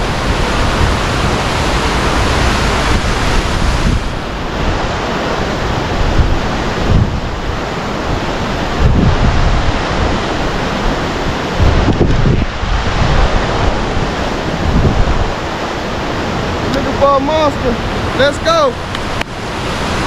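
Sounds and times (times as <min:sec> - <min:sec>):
low buffeting thumps from gusts: 0:00.0 - 0:05.0, 0:05.7 - 0:15.5
wind blowing across microphone: 0:00.0 - 0:20.0.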